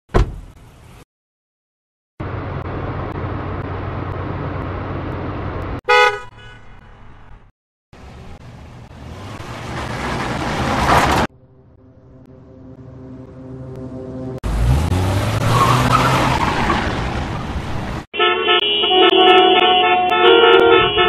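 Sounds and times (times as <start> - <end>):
car horn honk: 5.8 - 6.8, 18.1 - 21.0
car driving: 6.7 - 18.1.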